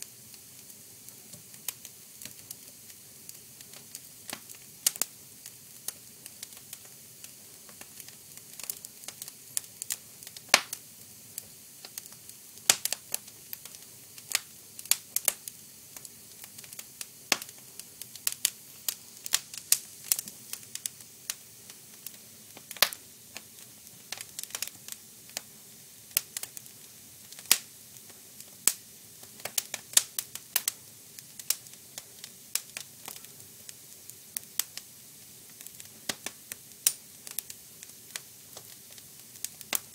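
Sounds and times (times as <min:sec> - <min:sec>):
faint low hiss: 0:00.0 - 0:39.9
wood fire crackling: 0:00.0 - 0:39.9.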